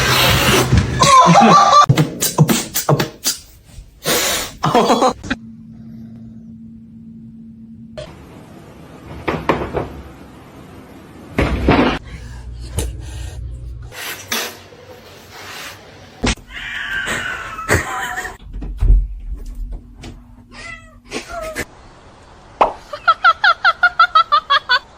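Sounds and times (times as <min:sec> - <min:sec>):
cat meowing: 0:16.5 - 0:17.8, 0:20.5 - 0:21.6.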